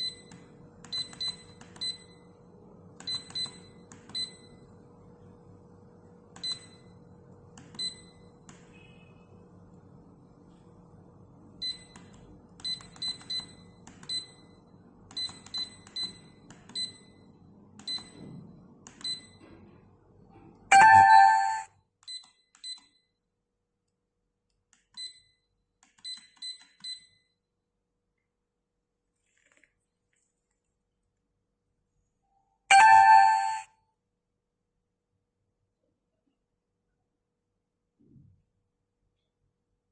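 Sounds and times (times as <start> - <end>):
high electronic beeps: 20.7 - 21.7, 32.7 - 33.6
loud multi-pitch electronic tone: 20.7 - 21.7, 32.7 - 33.6.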